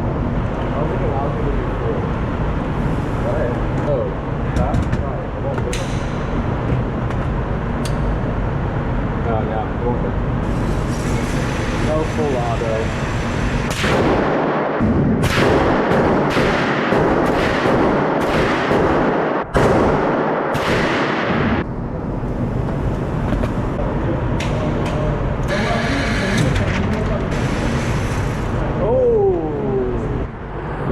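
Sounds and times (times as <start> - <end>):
rapid gunshots with echo: 13.7 - 21.6.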